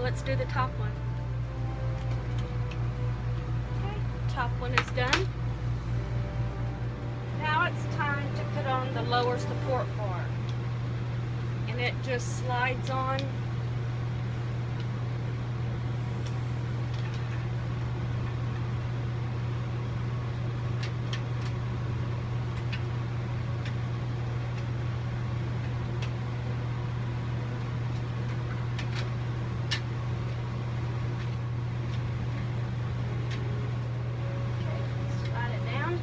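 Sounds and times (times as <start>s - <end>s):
low mechanical hum: 0.0s - 36.0s
metal parts clicking and tapping: 27.4s - 33.9s.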